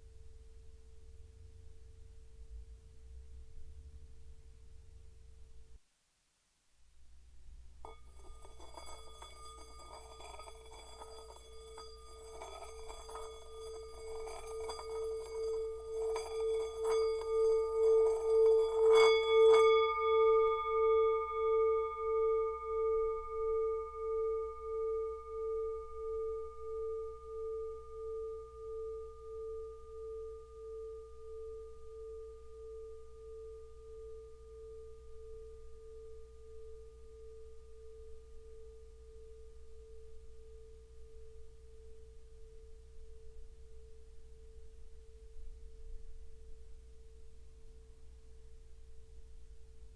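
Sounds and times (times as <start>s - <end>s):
singing bowl rubbed and ringing: 7.8s - 47.7s.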